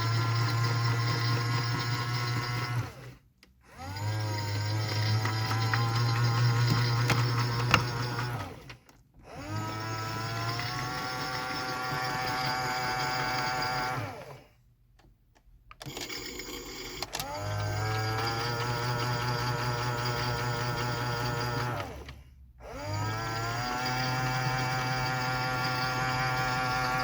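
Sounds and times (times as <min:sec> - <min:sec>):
washing machine motor whining: 0:00.0 - 0:14.5, 0:15.8 - 0:27.0.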